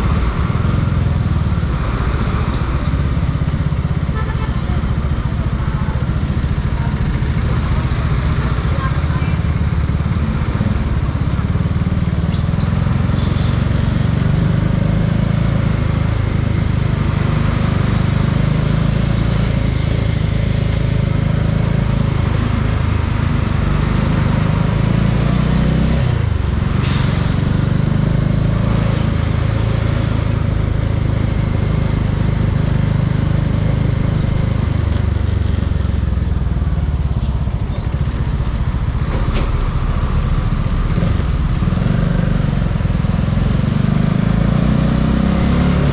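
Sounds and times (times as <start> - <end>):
motorcycle engine running: 0.0 - 24.8
wind and road noise: 0.0 - 45.9.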